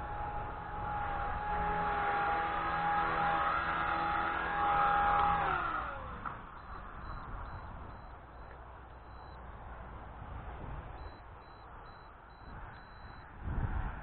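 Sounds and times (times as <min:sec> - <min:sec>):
rc helicopter rotors whining: 0:00.0 - 0:13.4
wind rumbling on microphone: 0:04.7 - 0:14.0.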